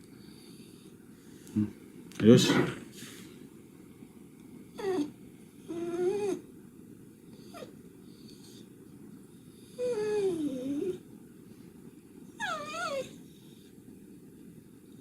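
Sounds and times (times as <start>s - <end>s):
dog whining: 4.7s - 6.5s, 7.4s - 8.7s, 9.7s - 11.0s, 12.3s - 13.6s.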